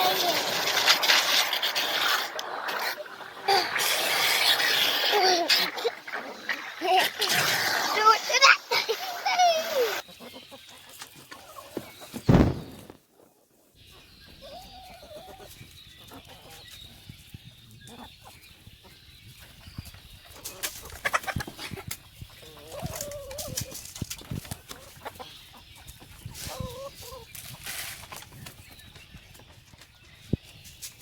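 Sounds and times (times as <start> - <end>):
hen calls rising and falling: 0.0 - 10.0
hens clucking: 0.0 - 30.8.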